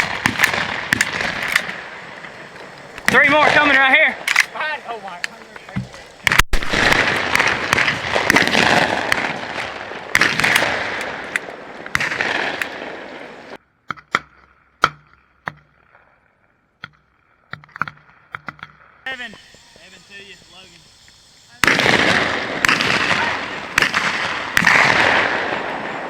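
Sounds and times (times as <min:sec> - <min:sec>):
shotgun blasts: 0:00.0 - 0:02.3, 0:03.0 - 0:04.6, 0:05.8 - 0:13.4, 0:21.5 - 0:26.0.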